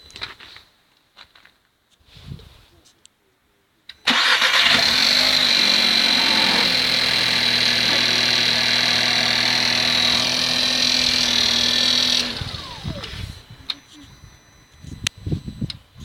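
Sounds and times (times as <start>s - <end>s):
car engine idling: 4.1s - 14.1s
high whine: 4.4s - 16.0s.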